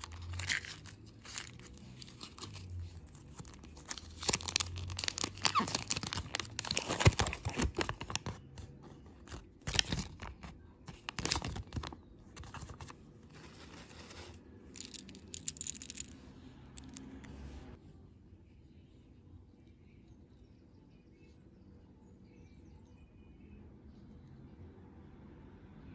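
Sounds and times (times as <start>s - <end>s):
candy packaging crinkling and tearing: 0.0s - 16.1s.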